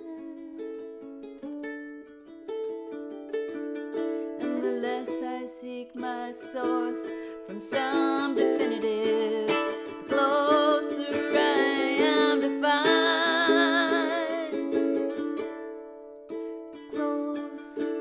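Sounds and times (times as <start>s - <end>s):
woman singing with vibrato: 0.0s - 0.8s, 4.4s - 15.0s, 16.8s - 18.0s
ukulele strumming chords: 0.0s - 18.0s.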